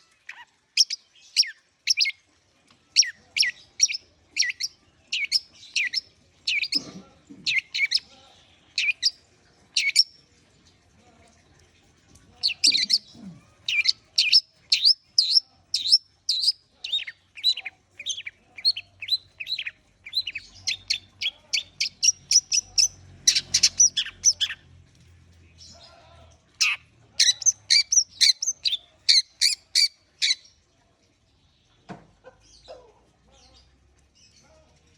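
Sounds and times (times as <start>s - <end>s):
bird chirping: 0.0s - 2.2s, 3.0s - 8.0s, 8.7s - 9.2s, 9.8s - 10.1s, 12.4s - 24.7s, 26.6s - 30.6s.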